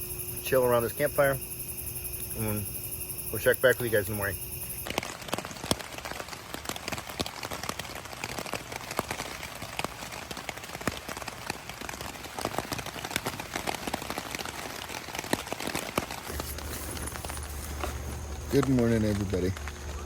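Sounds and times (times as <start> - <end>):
low steady hum: 0.0 - 4.9, 16.3 - 20.0
steady rain drops: 0.0 - 20.0.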